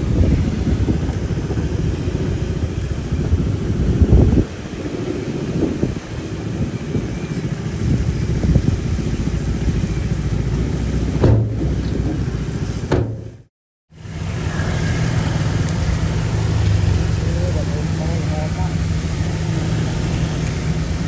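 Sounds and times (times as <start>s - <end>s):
heavy diesel engine running: 0.0s - 21.0s
short knocks: 11.2s - 12.2s, 12.9s - 13.5s.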